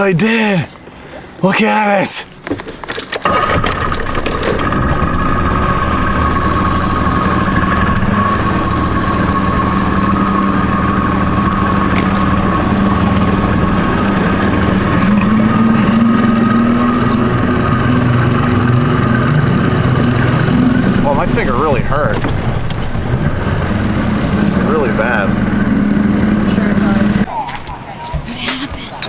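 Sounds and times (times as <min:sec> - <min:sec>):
boat engine whining: 0:00.0 - 0:27.3.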